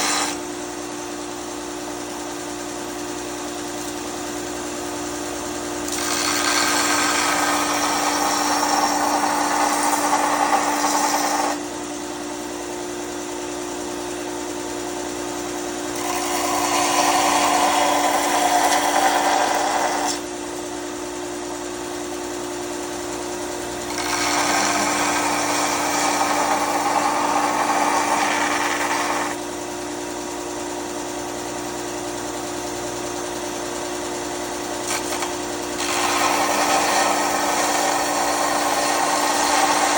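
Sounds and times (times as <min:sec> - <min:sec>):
knife blade grinding on belt: 0:00.0 - 0:00.4
belt grinder motor hum: 0:00.0 - 0:00.5, 0:05.5 - 0:11.6, 0:15.9 - 0:20.2, 0:23.0 - 0:29.4, 0:34.5 - 0:39.9.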